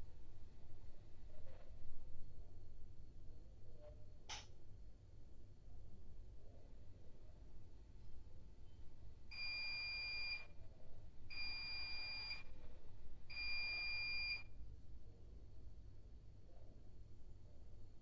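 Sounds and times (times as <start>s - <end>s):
washing machine electronic beeps: 9.3s - 10.5s, 11.3s - 12.5s, 13.3s - 14.5s.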